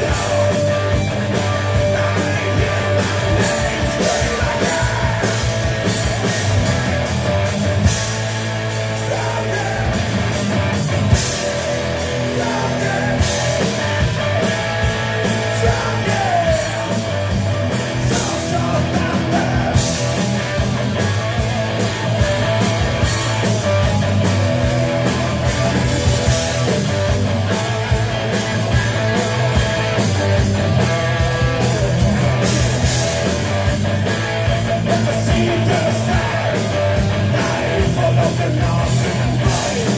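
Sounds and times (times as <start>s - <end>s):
person singing: 0.0s - 5.7s, 12.2s - 13.6s, 15.3s - 17.0s, 18.1s - 20.0s, 34.6s - 39.9s
bass guitar: 0.0s - 39.9s
distorted electric guitars: 0.0s - 39.9s.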